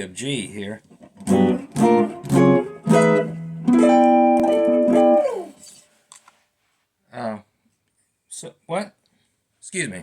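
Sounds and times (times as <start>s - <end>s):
plucked guitar notes: 1.2s - 5.6s
guitar chord sliding down: 1.3s - 5.4s.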